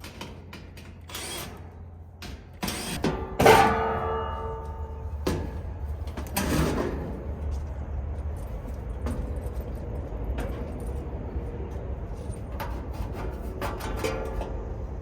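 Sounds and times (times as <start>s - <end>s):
steady low hum: 1.1s - 15.0s
sheet metal clanking and scraping: 2.4s - 7.3s.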